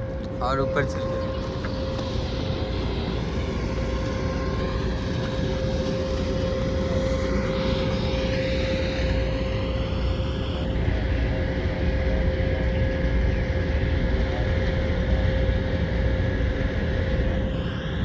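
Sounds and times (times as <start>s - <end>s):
faint high gliding tones: 0.0s - 11.0s
constant humming tone: 0.0s - 18.0s
steady mechanical drone: 0.0s - 18.0s.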